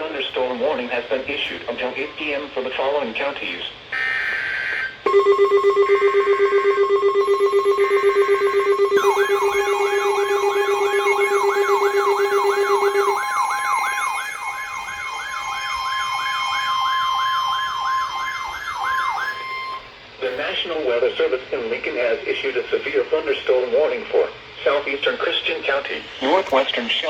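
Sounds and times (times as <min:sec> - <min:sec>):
sweeping siren-like alarm tone: 0:04.0 - 0:20.0
high beep tone: 0:05.1 - 0:19.9
pulsing low beep: 0:05.1 - 0:19.9
screeching digital data bursts: 0:07.8 - 0:19.9, 0:26.2 - 0:26.9.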